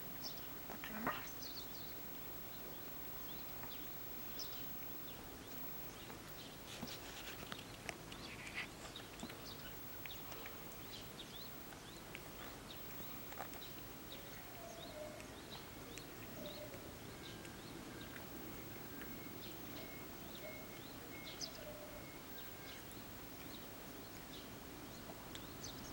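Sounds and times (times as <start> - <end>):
low background hiss: 0.0 - 25.9
small birds chirping: 0.0 - 25.9.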